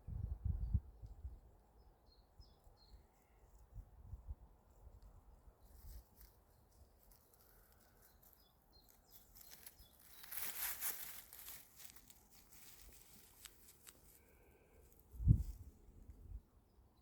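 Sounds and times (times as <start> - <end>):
rustling crinkling: 5.7 - 15.6.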